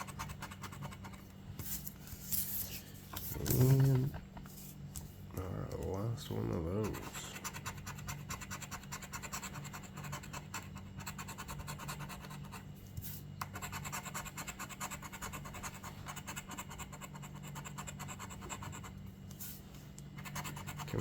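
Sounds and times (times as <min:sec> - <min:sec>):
scraping scratch-off ticket: 0:02.2 - 0:04.8, 0:05.4 - 0:09.5, 0:20.2 - 0:21.0.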